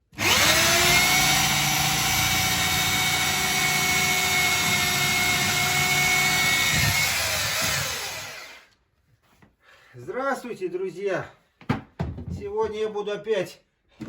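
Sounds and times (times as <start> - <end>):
electric drill whine: 0.1 - 8.7.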